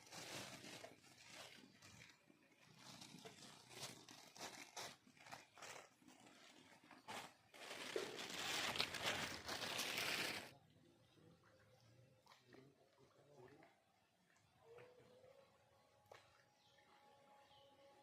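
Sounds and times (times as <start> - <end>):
material crinkling and rustling: 0.0 - 10.5.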